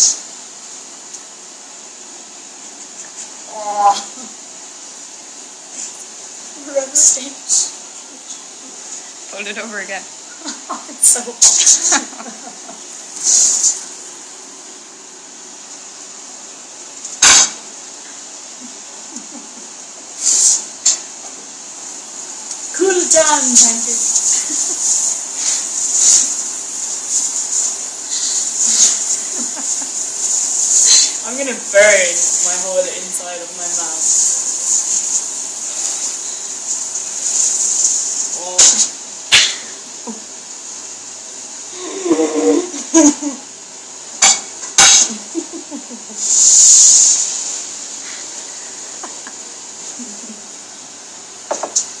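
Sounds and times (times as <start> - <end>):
loud hiss of breath: 13.1 - 13.8, 20.2 - 21.0, 21.9 - 31.3, 33.9 - 39.9, 46.1 - 49.0.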